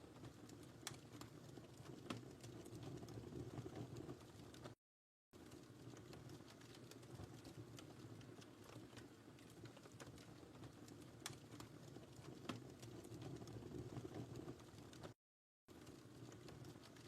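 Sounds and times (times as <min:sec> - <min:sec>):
wood fire crackling: 0:00.0 - 0:04.8, 0:05.4 - 0:17.0
sharp pops from fire: 0:05.4 - 0:15.1.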